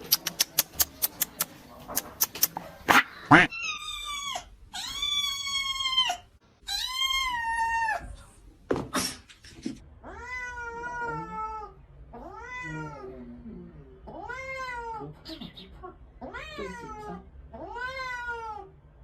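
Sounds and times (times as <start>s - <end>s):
cat meowing: 3.3s - 8.2s, 10.0s - 13.2s, 14.1s - 15.2s, 16.2s - 18.7s.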